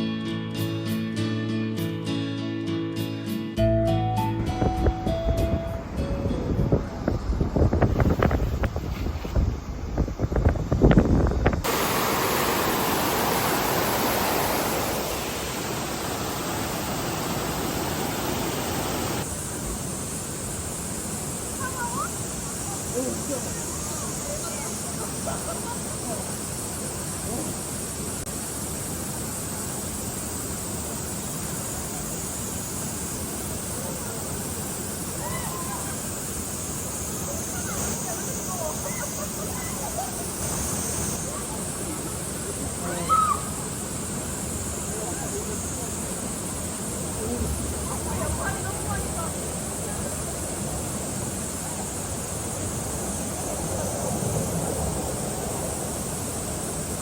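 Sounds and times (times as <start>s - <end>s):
high-pitched hiss: 2.9s - 57.0s
stream water flowing over rocks: 11.6s - 21.5s
stream rushing over rocks: 11.6s - 57.0s.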